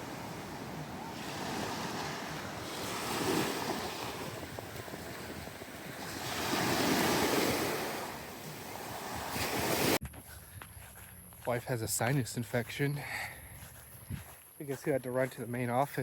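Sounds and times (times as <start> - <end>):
ocean surf washing ashore: 0.0 - 10.0
wind buffeting microphone: 0.0 - 11.2, 13.4 - 14.4.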